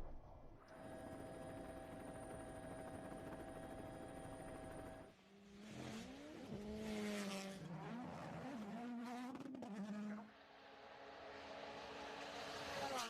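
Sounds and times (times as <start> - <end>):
rally car engine revving: 5.7 - 10.3.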